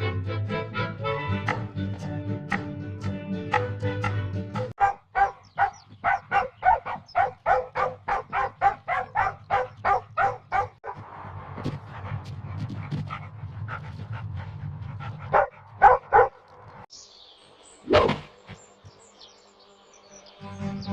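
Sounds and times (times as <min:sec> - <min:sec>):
small dog yapping: 0:04.8 - 0:11.0.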